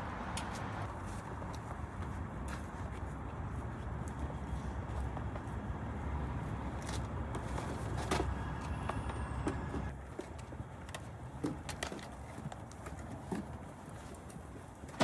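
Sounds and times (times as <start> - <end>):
low vehicle rumble: 5.7 - 10.0.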